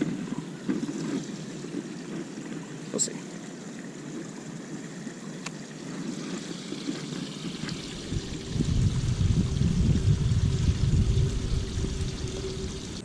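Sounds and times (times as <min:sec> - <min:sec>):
creek water trickling: 0:00.0 - 0:13.0
low rumble: 0:07.7 - 0:13.0.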